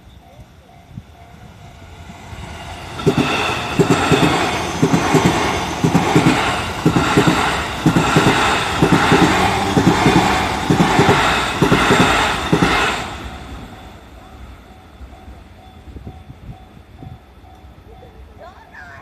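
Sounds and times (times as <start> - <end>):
train passing at speed: 0.0 - 19.0
wheels clattering over rail joints: 2.9 - 13.4.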